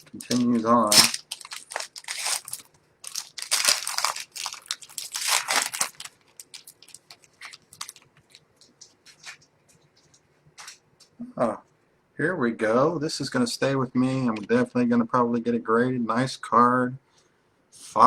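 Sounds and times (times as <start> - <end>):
foil wrapper tearing and crinkling: 0.0 - 8.4.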